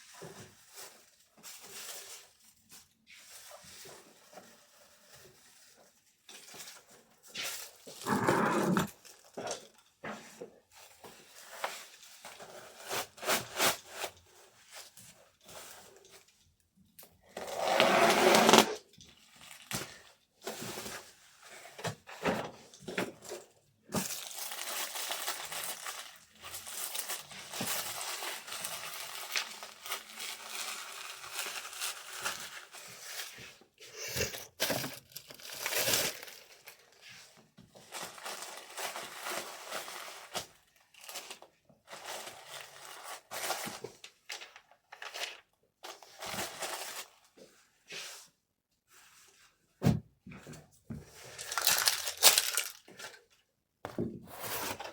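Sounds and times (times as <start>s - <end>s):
wrapping material crinkling: 23.9s - 47.3s, 51.2s - 53.2s.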